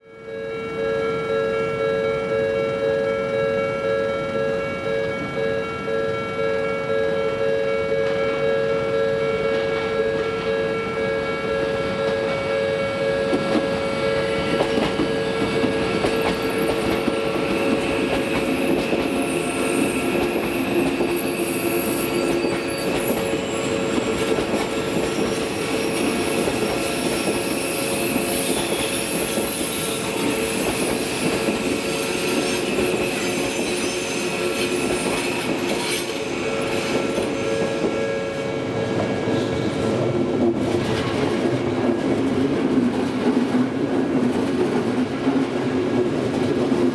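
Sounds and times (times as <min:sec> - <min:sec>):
crossing warning bell: 0:00.0 - 0:40.2
train wheels squealing and clattering: 0:09.4 - 0:46.9.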